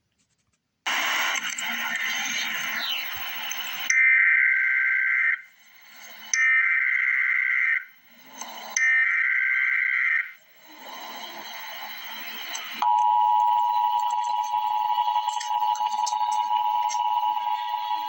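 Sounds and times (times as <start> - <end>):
warbling data tone bursts: 0.9 - 18.0
two-tone attention signal: 8.7 - 18.0.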